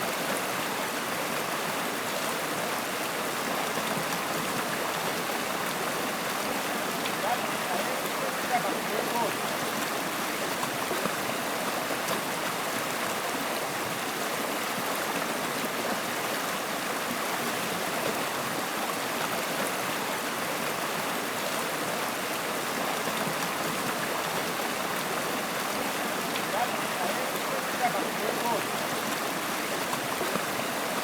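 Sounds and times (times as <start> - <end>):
water rushing and babbling: 0.0 - 31.0.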